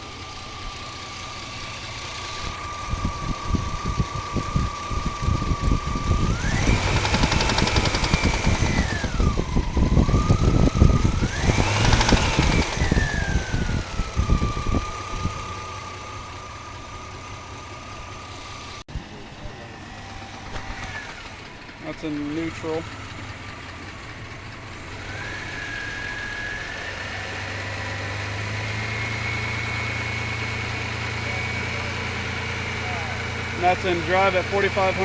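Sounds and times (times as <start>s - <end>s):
engine idling with ticking knock: 0.0s - 18.8s, 19.4s - 26.6s, 30.7s - 35.0s
engine revving: 0.0s - 35.0s
whine rising and falling: 0.3s - 15.8s.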